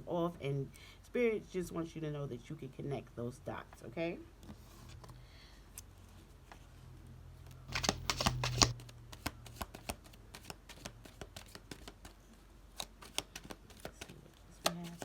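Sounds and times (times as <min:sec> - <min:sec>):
cards riffling: 0:07.7 - 0:11.9
card flicks and taps: 0:07.7 - 0:12.0.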